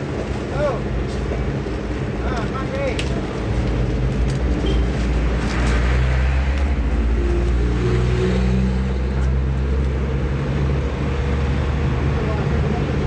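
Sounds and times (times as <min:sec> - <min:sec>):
engine low rumble: 0:00.0 - 0:13.0.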